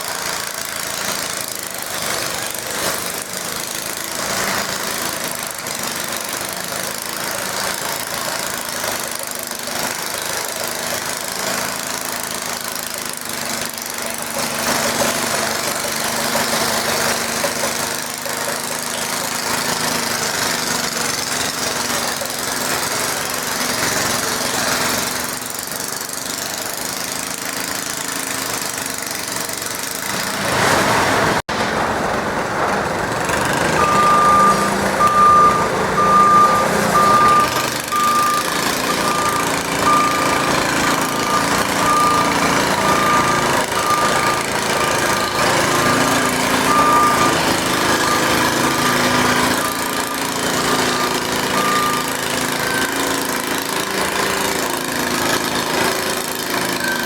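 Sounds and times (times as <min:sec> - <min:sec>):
small tractor engines running: 0:00.0 - 0:57.0
reversing beeper: 0:33.6 - 0:57.0.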